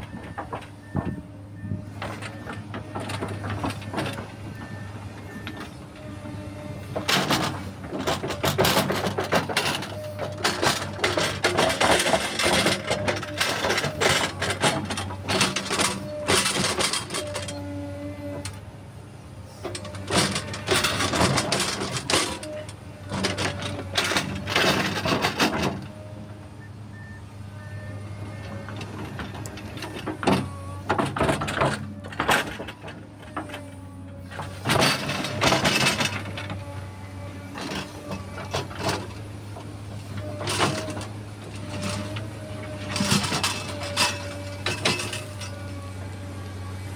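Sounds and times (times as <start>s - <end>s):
excavator diesel engine running: 0.0s - 46.9s
machine clattering and knocking: 7.0s - 17.5s, 19.7s - 25.9s, 28.7s - 33.7s, 34.4s - 36.7s.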